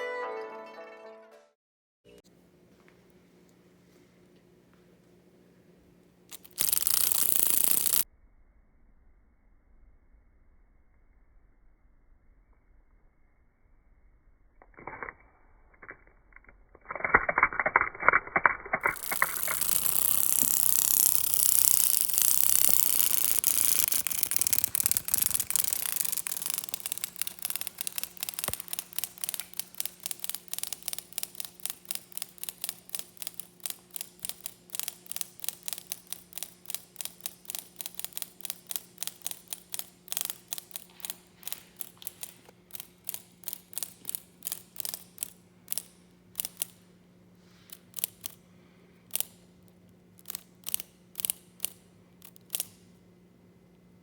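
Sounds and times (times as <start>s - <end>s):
cicada clicking: 6.3s - 8.0s, 18.8s - 46.7s, 50.2s - 52.7s.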